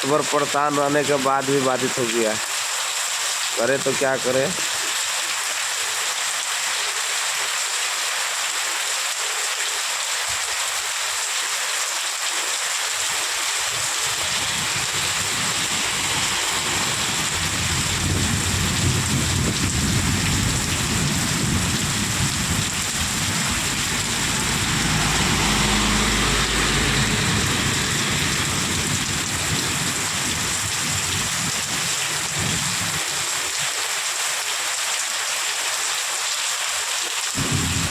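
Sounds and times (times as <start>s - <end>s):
heavy rain pouring: 0.0s - 37.9s
low rumble: 14.2s - 30.8s.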